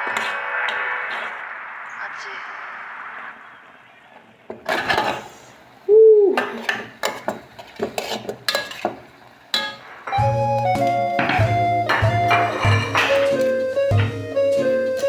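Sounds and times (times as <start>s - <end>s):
spoon scraping against pot: 6.4s - 10.2s, 11.2s - 13.6s.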